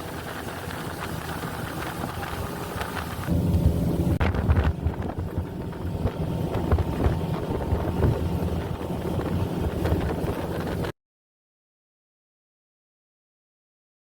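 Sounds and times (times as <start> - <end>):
boat engine rumble: 0.0 - 10.9
wind buffeting microphone: 0.0 - 10.9.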